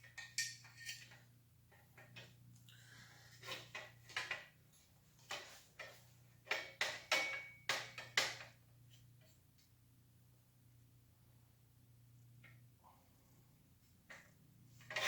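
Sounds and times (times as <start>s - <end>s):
metal tools knocking on handlebars: 5.8s - 8.5s.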